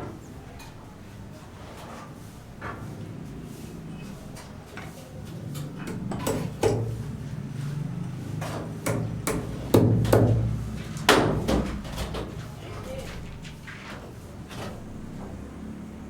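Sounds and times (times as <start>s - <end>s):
hammer blows: 8.4s - 13.0s.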